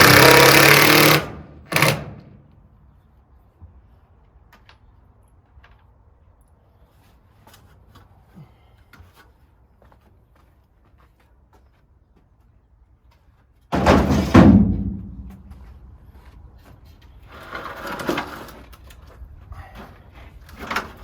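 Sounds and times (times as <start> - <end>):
loud booming thuds: 13.7 - 15.6.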